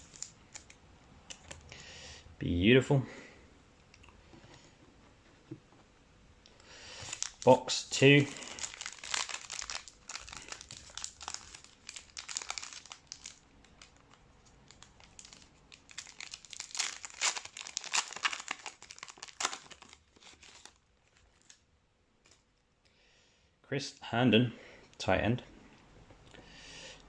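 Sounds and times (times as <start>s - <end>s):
plastic wrapping crinkling and tearing: 0.0s - 1.6s, 7.0s - 21.6s.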